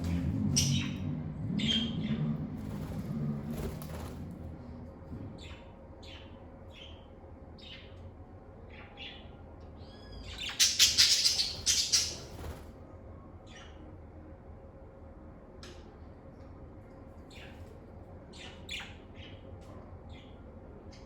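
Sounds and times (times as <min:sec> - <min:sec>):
birds chirping: 0:00.0 - 0:12.6, 0:17.0 - 0:21.0
birds squawking harshly: 0:09.8 - 0:12.5.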